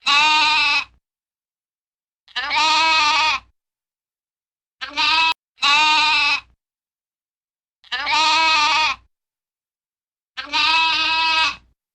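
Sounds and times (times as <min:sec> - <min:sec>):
goat or sheep bleating: 0:00.0 - 0:01.0, 0:02.3 - 0:03.5, 0:04.8 - 0:06.6, 0:07.8 - 0:09.1, 0:10.4 - 0:11.7.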